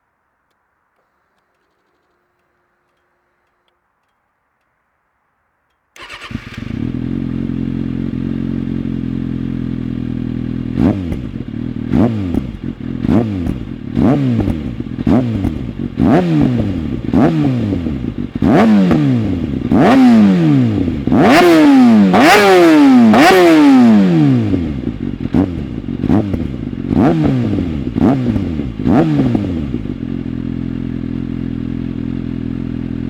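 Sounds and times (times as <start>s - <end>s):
motorcycle throttle blips: 5.6s - 33.0s
motorcycle engine idling: 6.0s - 33.0s
motorcycle engine starting: 6.0s - 33.0s.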